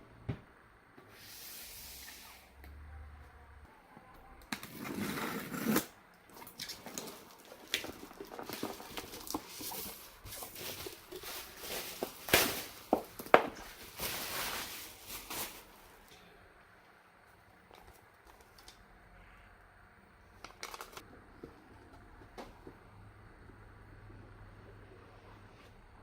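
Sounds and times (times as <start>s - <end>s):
packaging rustling: 6.4s - 16.0s, 20.4s - 21.1s.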